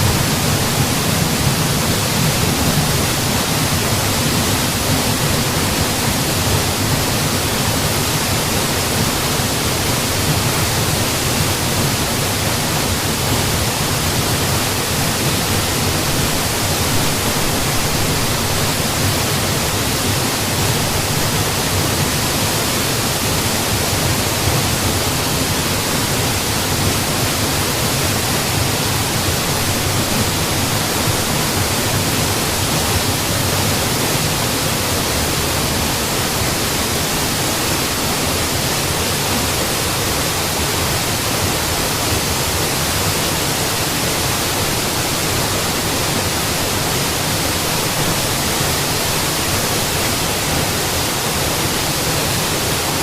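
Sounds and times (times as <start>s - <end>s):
waterfall roaring: 0.0s - 53.0s.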